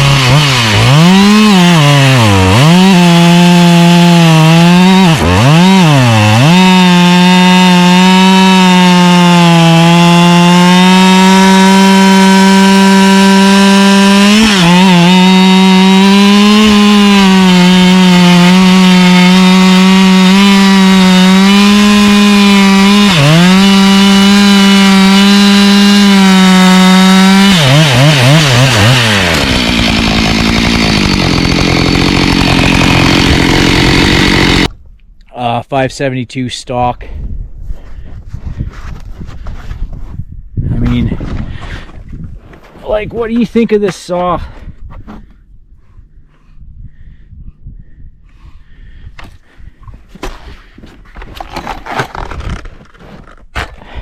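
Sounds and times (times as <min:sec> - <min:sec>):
chainsaw cutting wood: 0:00.0 - 0:34.8, 0:50.1 - 0:54.0.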